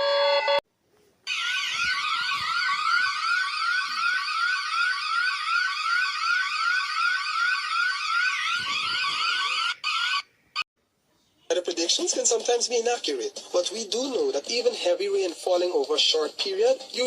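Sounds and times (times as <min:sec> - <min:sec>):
emergency alert siren: 0:00.0 - 0:00.6, 0:01.3 - 0:10.3
warbling tone: 0:01.3 - 0:09.6.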